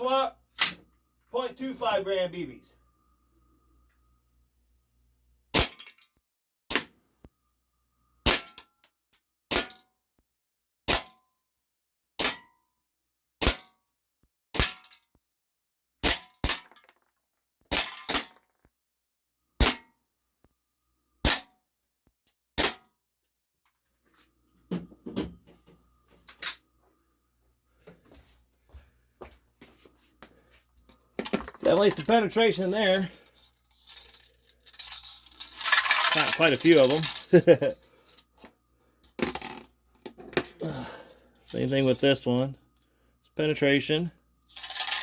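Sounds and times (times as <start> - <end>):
pellets hitting metal can: 31.2 - 38.2, 44.5 - 45.0.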